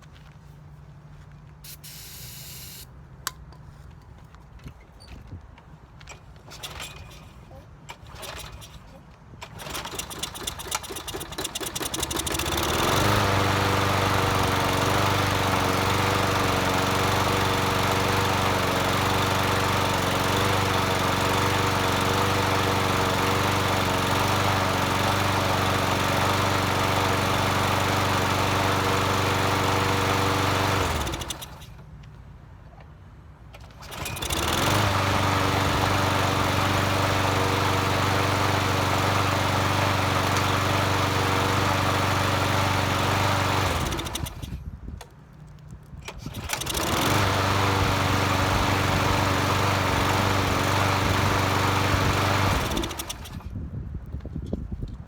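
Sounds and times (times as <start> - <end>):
lawn mower engine running: 6.5 - 8.8, 9.4 - 31.8, 33.5 - 44.6, 46.1 - 53.6.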